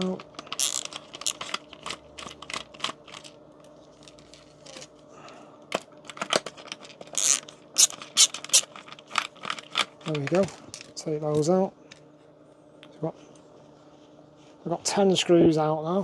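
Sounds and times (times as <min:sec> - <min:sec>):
screwdriver clicks and scrapes: 0:06.6 - 0:09.9.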